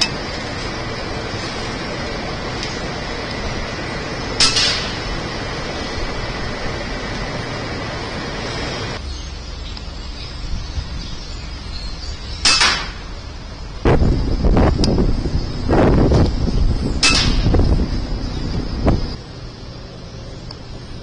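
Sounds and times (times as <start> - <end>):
steady background noise: 0.0 - 21.0
air rifle shots: 4.4 - 5.0, 12.4 - 13.0, 17.0 - 17.6.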